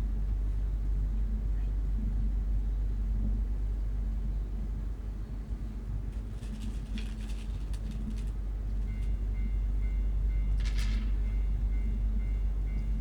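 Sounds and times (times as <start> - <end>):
low train rumble: 0.0 - 13.0
crossing warning bell ringing: 8.8 - 13.0.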